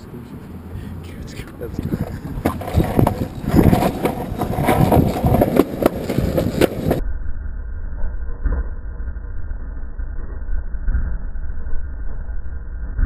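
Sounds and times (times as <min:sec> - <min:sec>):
muffled low rumble: 0:00.0 - 0:13.0
skateboard wheels rolling on pavement: 0:01.4 - 0:07.0
skateboard clicks and knocks: 0:01.5 - 0:07.0.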